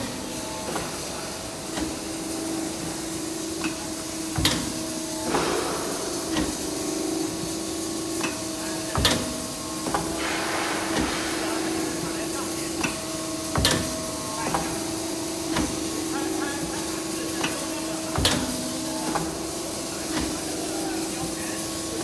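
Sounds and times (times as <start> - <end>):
hydraulic press humming: 0.0 - 22.0
sharp knocks: 5.3 - 6.7
short hiss bursts: 10.1 - 12.1.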